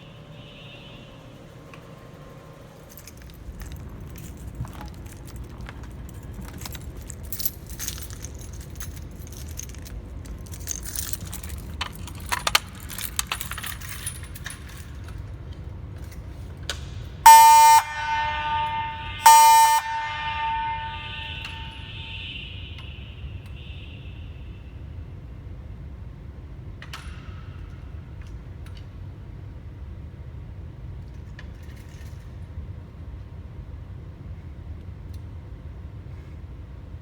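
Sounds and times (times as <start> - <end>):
fire alarm horn blasts: 0.0 - 13.7, 17.2 - 25.2
faint clicks and rattles: 2.6 - 17.0.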